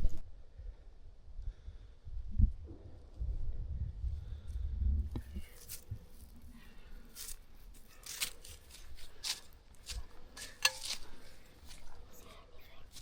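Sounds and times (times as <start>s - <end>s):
footsteps crunching in dry leaves: 5.5s - 13.0s.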